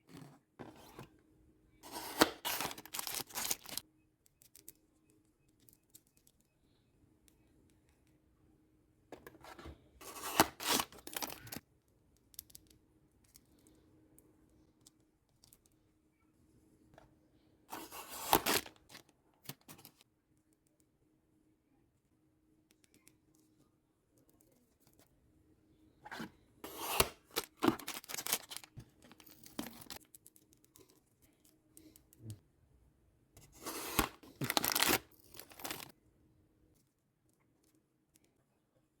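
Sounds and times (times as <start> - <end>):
packaging clicks and rustles: 1.8 - 3.8, 9.3 - 11.6, 17.7 - 20.0, 26.1 - 31.0, 33.5 - 35.9
packaging ripping: 1.8 - 3.8, 10.0 - 11.6, 17.7 - 19.0, 26.7 - 28.7, 33.6 - 35.9.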